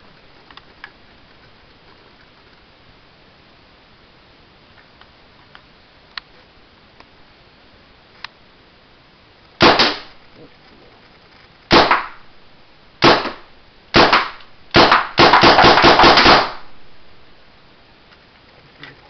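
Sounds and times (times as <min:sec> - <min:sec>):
compressed-air marker shots: 0:09.6 - 0:10.1, 0:11.7 - 0:12.2, 0:13.0 - 0:16.7.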